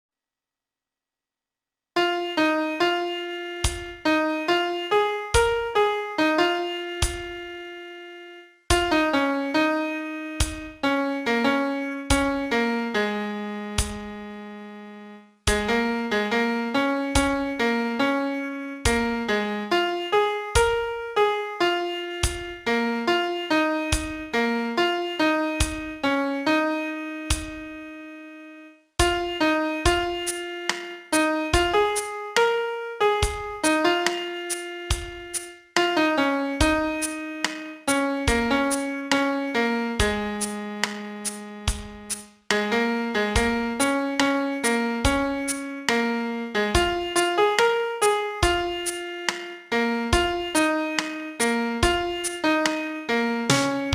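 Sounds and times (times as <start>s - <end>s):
piano melody: 2.0s - 53.9s.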